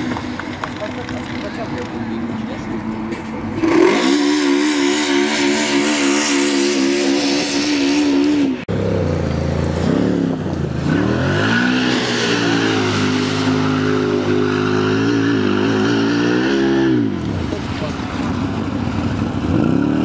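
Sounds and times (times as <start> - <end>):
racing engine revving hard: 3.6 - 17.3, 18.2 - 20.0.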